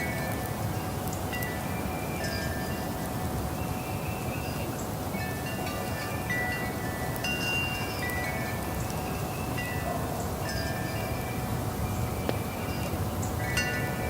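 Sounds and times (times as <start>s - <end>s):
wind chimes ringing: 0.0s - 14.0s.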